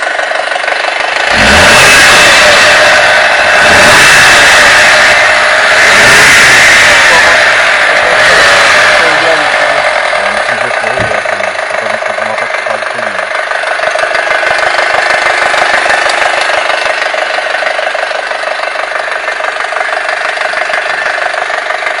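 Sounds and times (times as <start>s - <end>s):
car engine running: 0.0s - 22.0s.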